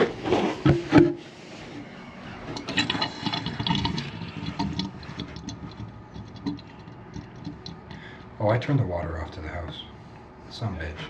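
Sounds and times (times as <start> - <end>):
fittings clicking and rattling: 2.5 - 8.4.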